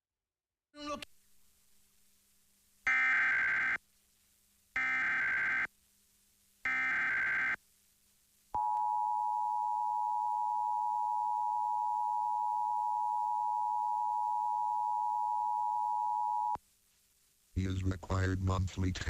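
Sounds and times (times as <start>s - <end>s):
digital data bursts: 6.7s - 7.6s.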